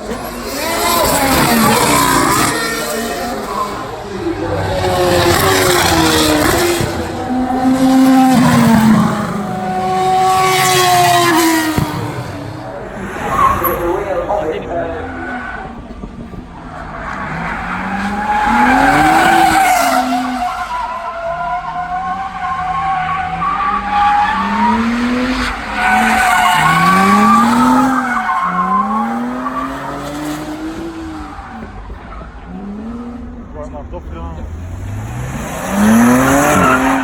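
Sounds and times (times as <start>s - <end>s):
car engine revving: 0.0s - 37.0s
tyres squealing: 16.7s - 32.9s.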